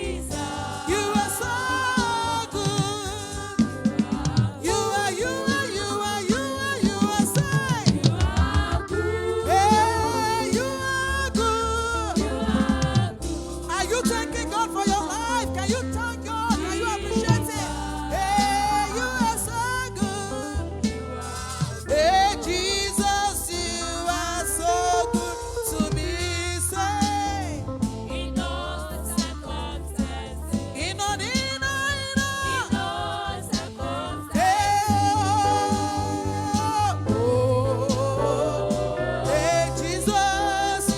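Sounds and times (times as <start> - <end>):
gospel singing with bass and beat: 0.0 - 40.9.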